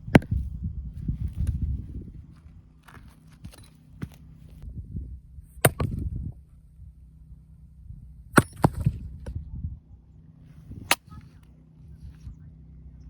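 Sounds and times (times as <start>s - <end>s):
axe striking firewood: 0.0s - 0.6s, 2.9s - 4.6s, 5.6s - 6.0s, 8.3s - 9.1s, 10.8s - 11.2s.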